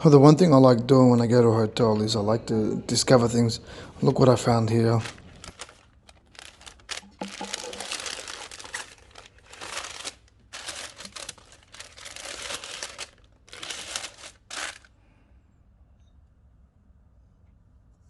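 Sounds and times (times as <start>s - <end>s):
plastic wrapping crinkling: 4.4s - 14.9s.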